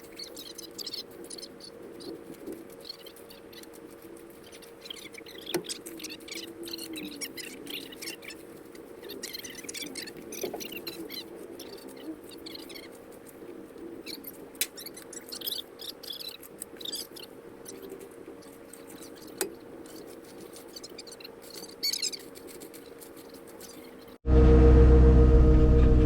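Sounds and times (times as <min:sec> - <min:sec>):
small birds chirping: 0:00.0 - 0:24.2
faint steady machine hum: 0:00.0 - 0:26.0
heavy-equipment engine running: 0:24.2 - 0:26.0.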